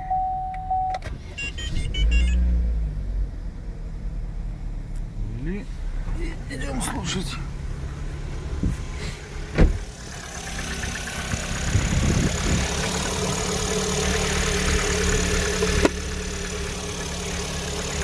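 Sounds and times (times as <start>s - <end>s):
car engine idling: 0.0s - 18.0s
short thump: 8.6s - 10.0s.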